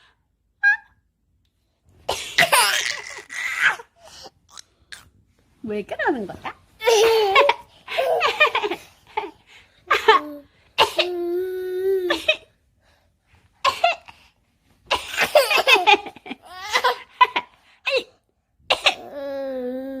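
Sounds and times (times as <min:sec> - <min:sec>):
woman and child coughing: 0:02.1 - 0:02.9, 0:10.8 - 0:11.2, 0:12.1 - 0:12.5, 0:18.7 - 0:19.2.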